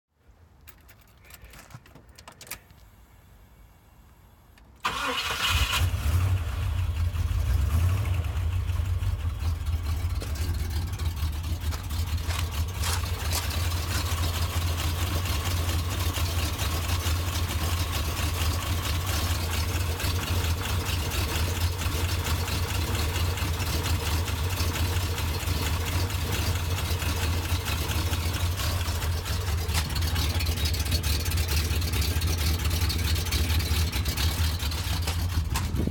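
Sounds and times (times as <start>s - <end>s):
engine cranking and starting: 4.8s - 35.9s
engine idling with knock: 8.0s - 35.9s.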